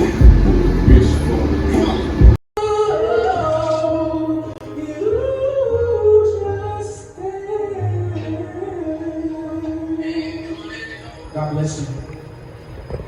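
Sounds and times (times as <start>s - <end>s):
steady bass line: 0.0s - 2.4s
person singing: 0.0s - 11.0s.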